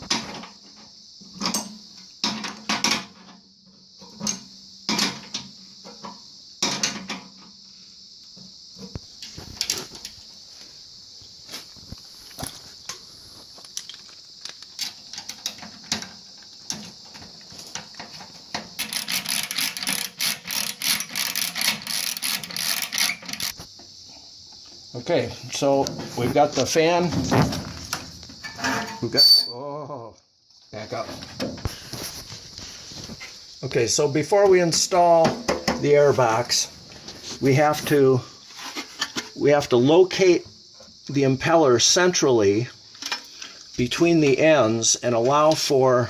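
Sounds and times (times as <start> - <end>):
steady high hiss: 0.0 - 46.0
metal parts clicking and scraping: 13.6 - 23.7.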